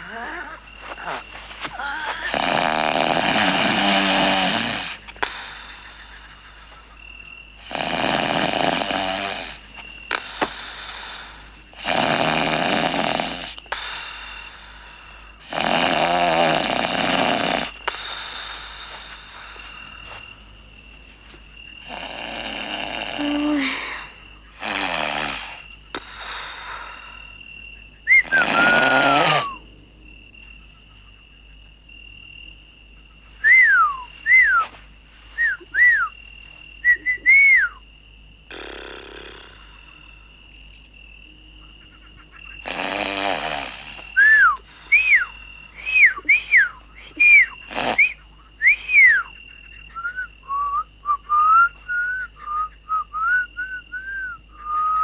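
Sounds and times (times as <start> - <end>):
man snoring: 0.0 - 5.7, 7.6 - 14.4, 15.4 - 19.6, 21.8 - 27.0, 28.2 - 29.6, 38.5 - 40.0, 42.6 - 45.2, 47.2 - 48.2
wavering tune-like whistle: 33.5 - 34.7, 35.4 - 36.2, 36.8 - 37.8, 44.2 - 55.0
whistles sliding down in pitch: 33.5 - 34.8.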